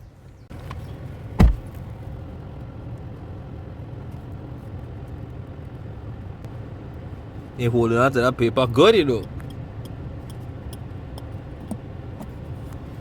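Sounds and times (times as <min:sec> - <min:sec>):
vehicle engine rumble: 0:00.0 - 0:13.0
loud thump: 0:01.4 - 0:01.8.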